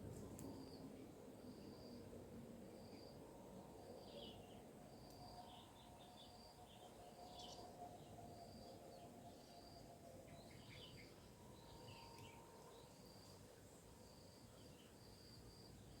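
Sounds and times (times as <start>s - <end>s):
insects: 0.0s - 16.0s.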